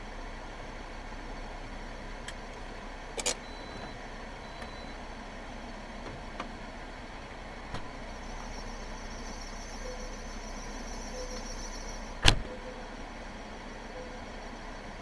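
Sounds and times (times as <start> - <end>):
steady car noise: 0.0 - 15.0
faint high whistle: 8.2 - 12.8.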